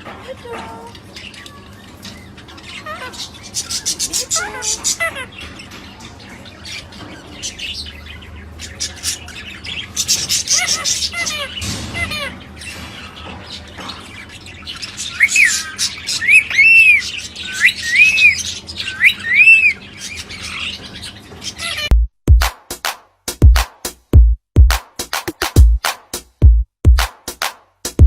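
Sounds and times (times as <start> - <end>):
parrot squawking: 0.3 - 5.8, 8.7 - 13.2, 14.0 - 21.9
parrot whistling: 15.2 - 19.8.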